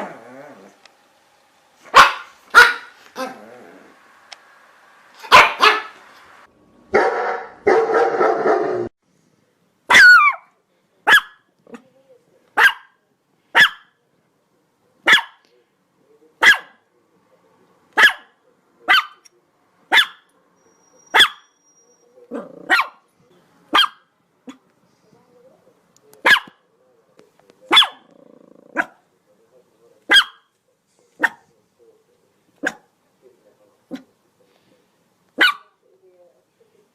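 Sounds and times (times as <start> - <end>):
rough noisy sound: 0.0 - 6.7
dog barking: 1.9 - 3.4, 5.2 - 6.0, 6.9 - 8.9, 9.9 - 11.8, 12.6 - 14.0, 15.0 - 15.5, 16.4 - 16.8, 18.0 - 19.2, 19.9 - 20.3, 21.1 - 21.5, 22.3 - 23.1, 23.7 - 24.6, 26.2 - 26.6, 27.7 - 28.1, 28.8 - 29.0, 30.1 - 30.5, 31.2 - 31.5, 32.6 - 32.9, 35.4 - 35.8.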